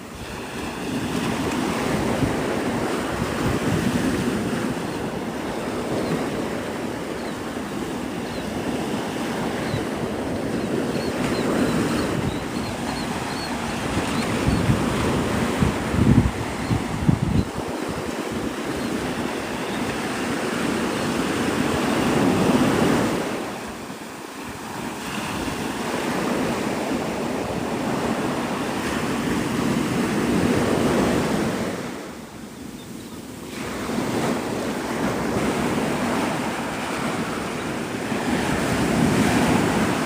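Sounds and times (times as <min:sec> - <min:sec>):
surf breaking on beach: 0:00.0 - 0:32.2, 0:33.4 - 0:40.0
wind on microphone: 0:00.0 - 0:40.0.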